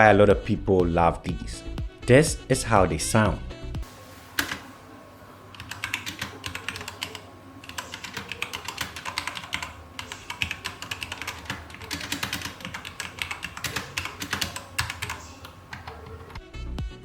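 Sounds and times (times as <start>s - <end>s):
mechanical keyboard typing: 5.5s - 16.4s.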